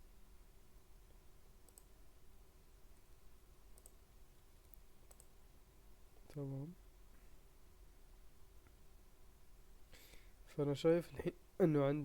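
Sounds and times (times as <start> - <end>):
low steady hum: 0.0 - 12.0
computer mouse clicks: 1.6 - 2.0, 3.7 - 4.0, 4.6 - 5.4.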